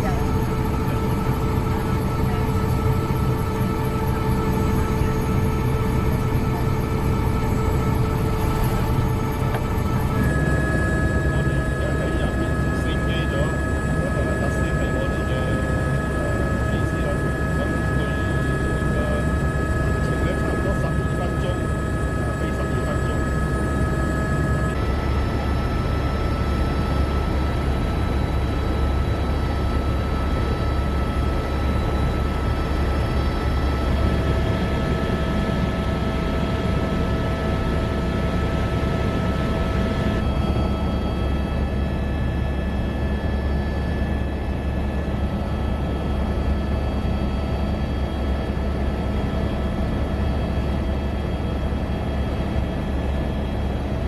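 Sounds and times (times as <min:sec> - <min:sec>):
whining tones: 0:00.0 - 0:25.3
helicopter engine and rotor: 0:00.0 - 0:54.0.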